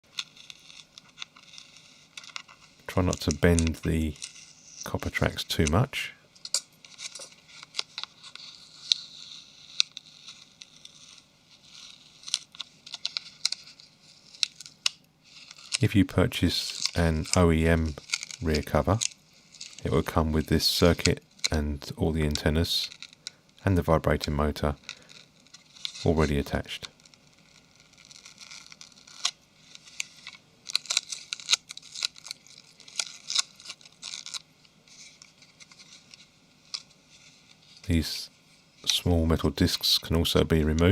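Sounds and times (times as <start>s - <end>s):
small tool clicks and scratches: 0.1s - 5.8s, 6.4s - 15.8s, 16.6s - 21.6s, 22.2s - 23.6s, 24.3s - 37.8s
light scraping of plastic: 24.1s - 39.7s.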